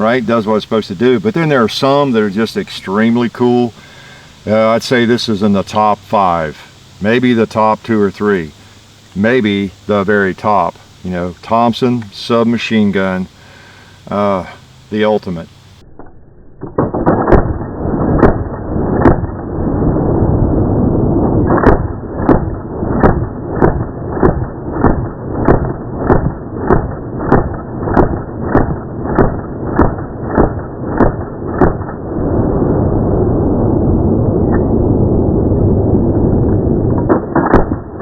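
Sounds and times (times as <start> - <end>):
slowed muffled gunshots: 15.9 - 33.0, 34.4 - 38.0.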